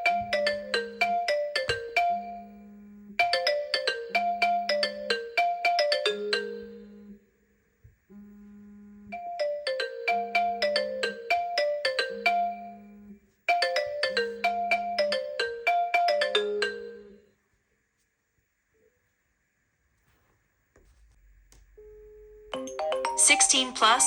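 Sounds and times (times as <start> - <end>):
marimba-like phone ringtone: 0.0 - 7.2, 9.2 - 17.3, 22.5 - 24.0
low hum: 20.7 - 23.1.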